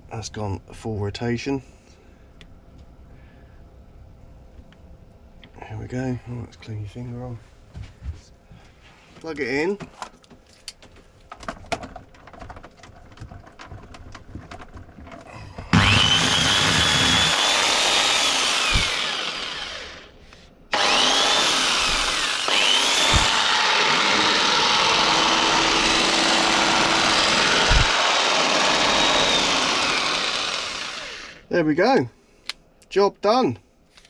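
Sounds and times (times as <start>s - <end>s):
jigsaw motor whine: 15.7s - 20.1s, 20.7s - 31.5s.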